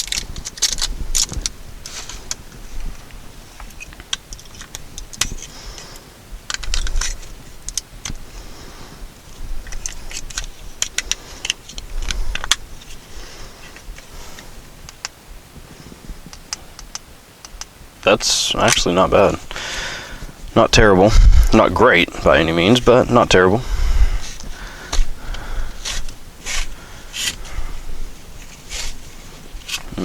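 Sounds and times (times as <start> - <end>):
plastic clicks: 0.0 - 2.4, 6.5 - 8.2, 9.6 - 12.6, 16.3 - 17.7
plastic rattling: 0.0 - 2.4.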